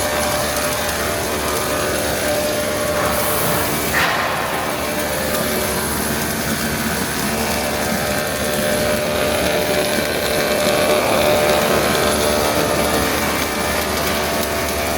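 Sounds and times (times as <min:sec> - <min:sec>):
broad machine hiss: 0:00.0 - 0:09.6
machine hums: 0:00.0 - 0:14.9.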